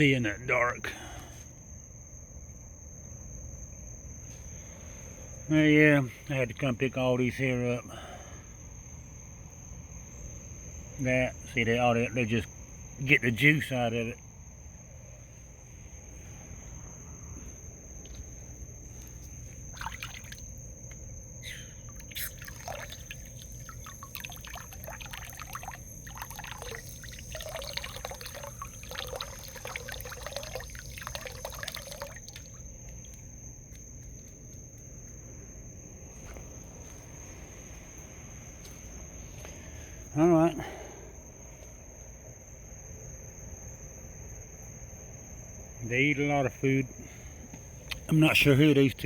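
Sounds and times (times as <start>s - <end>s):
cricket trill: 0.0s - 49.0s
raccoons chewing and slurping: 21.9s - 33.2s.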